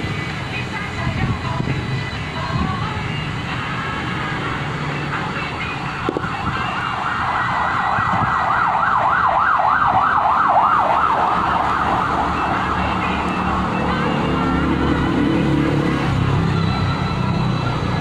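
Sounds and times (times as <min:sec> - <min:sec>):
low rumble of traffic: 0:00.0 - 0:18.0
emergency siren yelping: 0:06.0 - 0:18.0.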